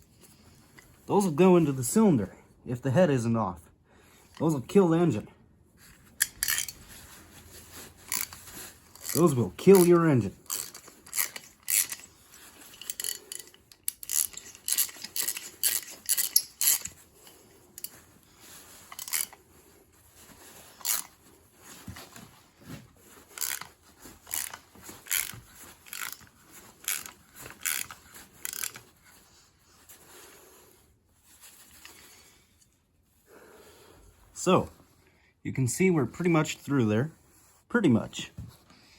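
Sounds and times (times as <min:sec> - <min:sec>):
ratchet clicking: 0:06.2 - 0:06.8, 0:08.1 - 0:12.1, 0:12.7 - 0:17.0, 0:18.9 - 0:19.4, 0:20.8 - 0:21.1, 0:23.4 - 0:23.7, 0:24.3 - 0:26.2, 0:26.8 - 0:28.8.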